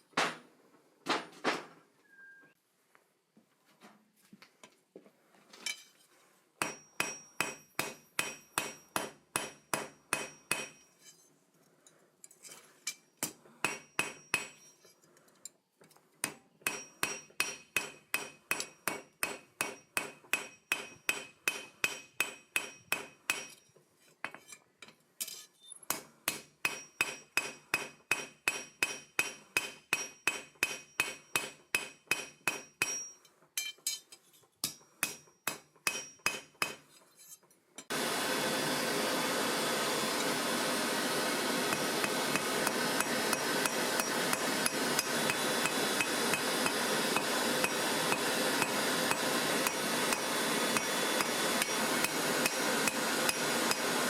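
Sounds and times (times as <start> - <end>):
hammer striking steel on anvil: 6.6 - 11.2, 12.9 - 14.8, 16.2 - 24.6, 25.2 - 34.0, 34.6 - 36.9, 41.7 - 54.0.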